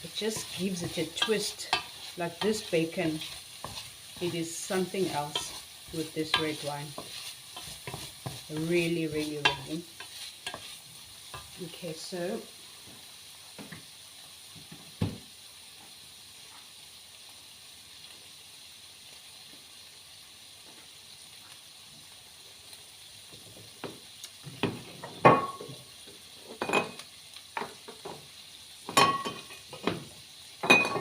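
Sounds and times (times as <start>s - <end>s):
food sizzling in a pan: 0.0s - 31.0s
kitchenware clinking and knocking: 28.9s - 31.0s.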